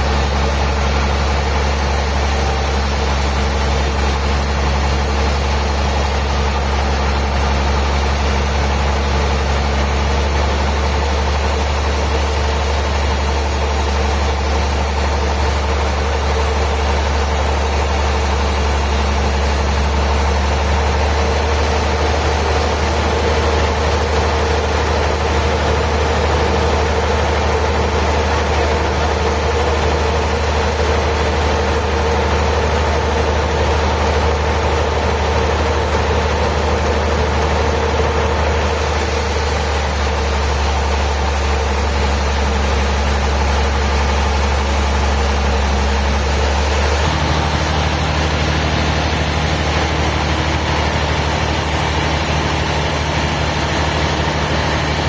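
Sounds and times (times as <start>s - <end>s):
sawmill machinery running: 0.0s - 55.0s.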